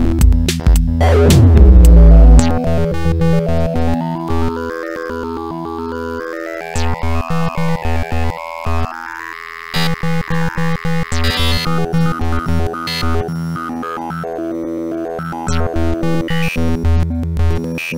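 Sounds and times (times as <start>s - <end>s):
steady bass beat: 0.0s - 3.9s
electronic music with synthesizer: 0.0s - 17.9s.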